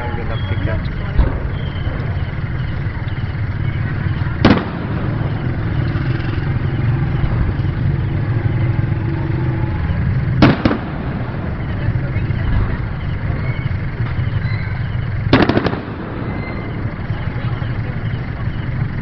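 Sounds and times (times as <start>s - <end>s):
fireworks bangs: 0.0s - 8.7s, 9.5s - 19.0s.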